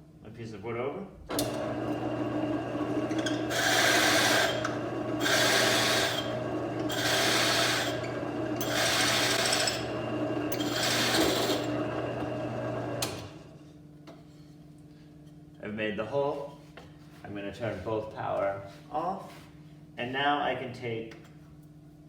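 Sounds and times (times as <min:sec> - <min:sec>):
drill press motor running: 0:01.3 - 0:13.4
drill bit cutting wood: 0:01.5 - 0:13.1.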